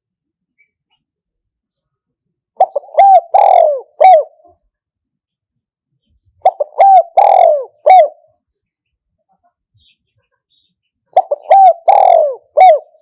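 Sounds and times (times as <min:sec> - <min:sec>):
dove cooing: 0:02.6 - 0:04.5, 0:06.4 - 0:08.3, 0:11.2 - 0:13.0.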